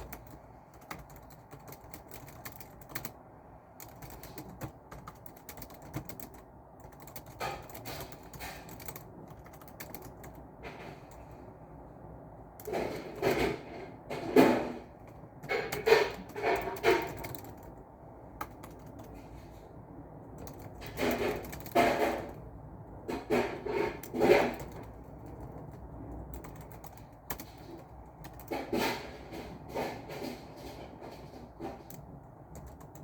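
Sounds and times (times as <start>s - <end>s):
keyboard clicks: 0.0s - 3.2s, 3.8s - 10.4s, 15.0s - 17.8s, 18.4s - 19.2s, 20.4s - 22.4s, 23.9s - 28.8s, 31.8s - 33.0s.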